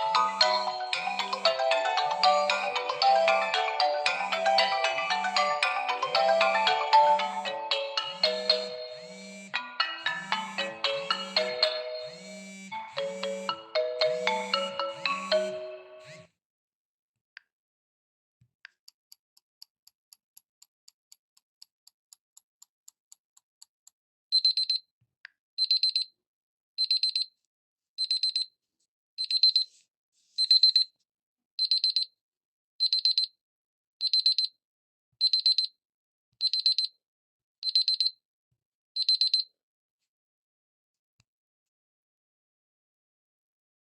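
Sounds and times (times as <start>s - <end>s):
high electronic alarm beeping: 0.0s - 16.2s.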